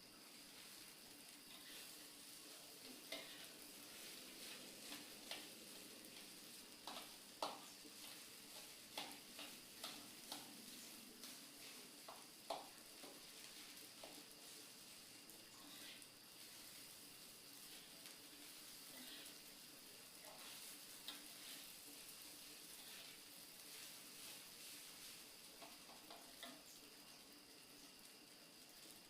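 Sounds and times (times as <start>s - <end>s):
steady hiss: 0.0s - 29.0s.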